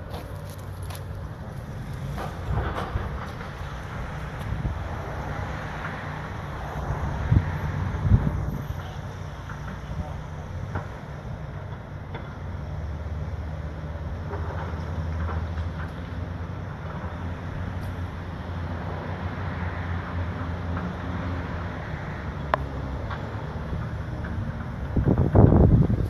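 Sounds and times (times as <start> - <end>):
large engine rumbling: 0.0 - 26.0
wind on microphone: 6.6 - 8.8, 24.7 - 26.0.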